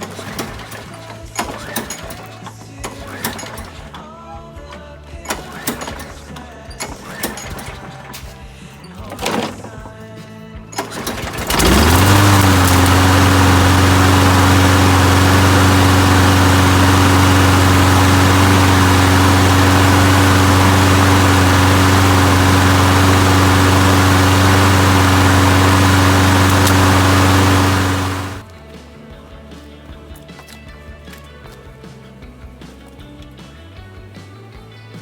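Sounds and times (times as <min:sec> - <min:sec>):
lawn mower engine running: 0:00.0 - 0:04.1, 0:05.3 - 0:07.8, 0:10.8 - 0:28.5.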